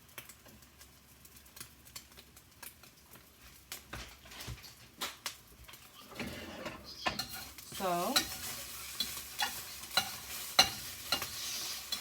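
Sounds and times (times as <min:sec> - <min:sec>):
utensil tapping a frying pan: 0:07.0 - 0:12.0.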